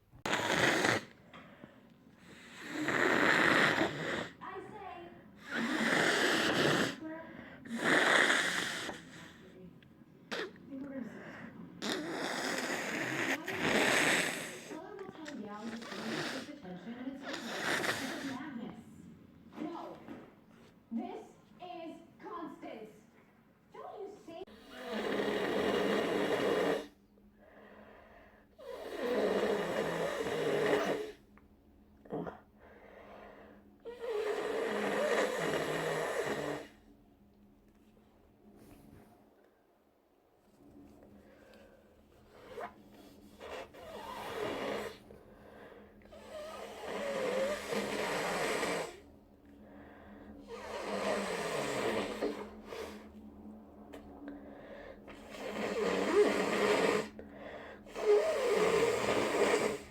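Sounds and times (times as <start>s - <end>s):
person blowing nose: 0.2s - 1.2s, 2.3s - 4.4s, 5.4s - 7.0s, 11.8s - 14.8s, 17.3s - 18.4s, 28.6s - 31.2s, 33.9s - 36.7s, 42.4s - 45.0s, 46.1s - 49.0s, 50.5s - 53.0s, 55.3s - 57.2s, 57.9s - 59.9s
nose snorts: 0.2s - 1.3s, 2.2s - 4.5s, 5.4s - 9.4s, 10.3s - 18.6s, 24.5s - 27.0s, 28.6s - 31.2s, 33.9s - 36.8s, 42.2s - 49.0s, 50.4s - 53.1s, 55.1s - 59.9s.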